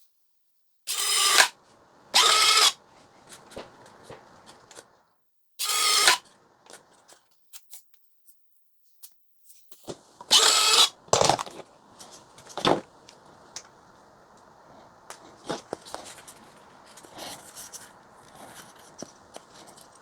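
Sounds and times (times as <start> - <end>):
power tool bursts: 0.9 - 1.6, 2.2 - 2.8, 5.6 - 6.2, 10.3 - 11.5.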